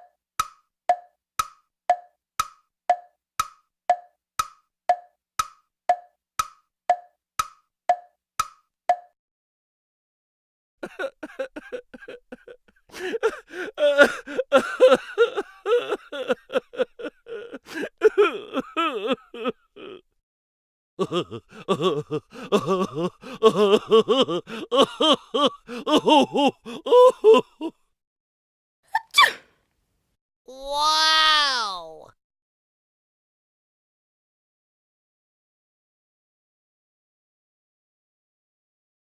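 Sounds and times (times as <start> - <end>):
comic giggling chatter: 10.8 - 20.0, 21.0 - 27.7.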